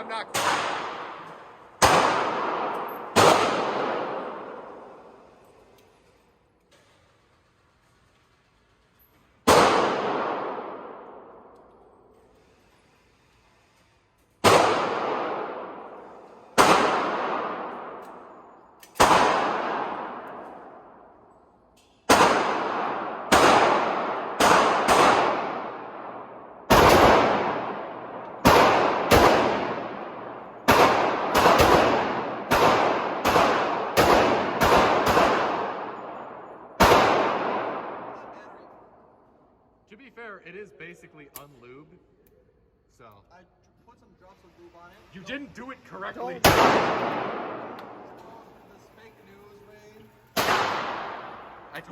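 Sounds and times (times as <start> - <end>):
pistol shots echoing: 0.0 - 5.2, 9.4 - 11.6, 14.4 - 21.3, 22.1 - 39.1, 46.3 - 48.8, 50.3 - 51.9.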